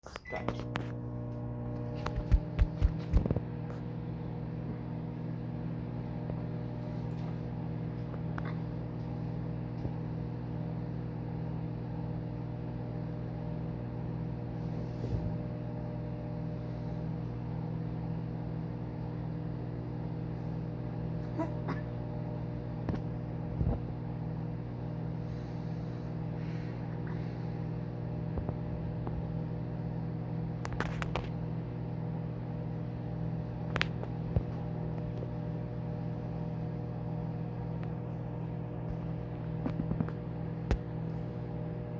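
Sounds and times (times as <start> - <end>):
microwave oven humming: 0.1 - 41.9.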